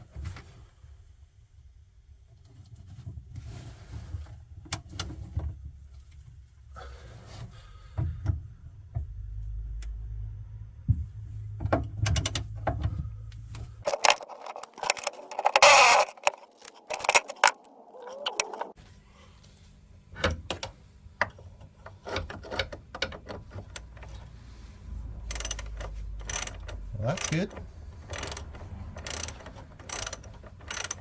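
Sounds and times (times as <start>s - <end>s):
rasping burst: 13.9s - 18.8s.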